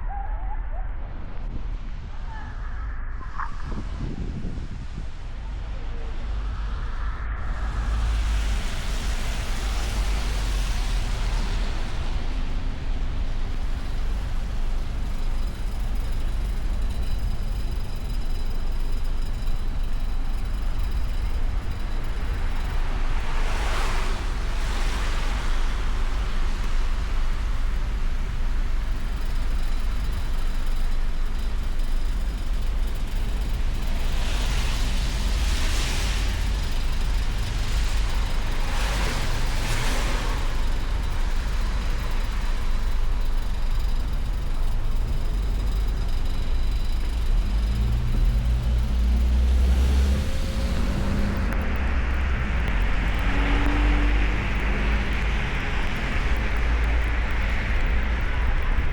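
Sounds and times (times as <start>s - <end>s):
road and wind rumble: 0.0s - 58.9s
tyre hiss of passing vehicles: 6.6s - 15.8s, 20.8s - 30.3s, 33.9s - 43.4s, 46.3s - 58.9s.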